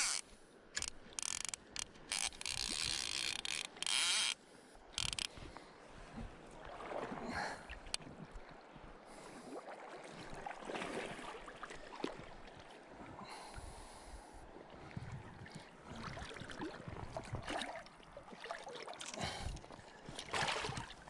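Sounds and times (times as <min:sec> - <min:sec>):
river water splashing: 0:00.0 - 0:21.0.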